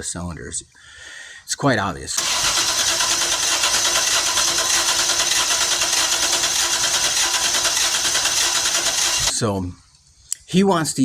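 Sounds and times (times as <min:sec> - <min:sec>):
engine cranking on starter: 0:02.2 - 0:09.4.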